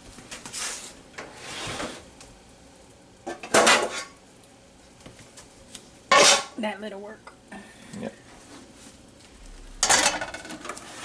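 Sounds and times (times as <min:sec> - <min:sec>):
loud clatter: 0:09.4 - 0:10.8.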